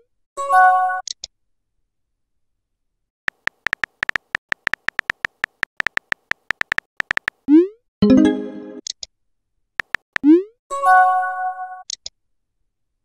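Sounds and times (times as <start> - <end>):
keyboard typing clicks: 3.3 - 7.5, 9.8 - 10.3
notification chime: 8.0 - 8.8.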